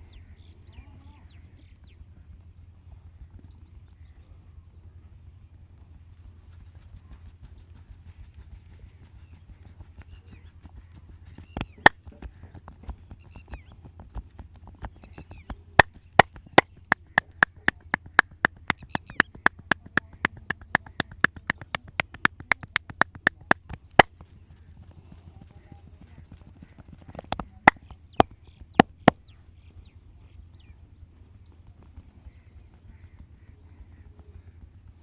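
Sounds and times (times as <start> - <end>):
hands slapping in percussive massage: 15.8 - 24.1, 27.3 - 28.2, 28.8 - 29.2.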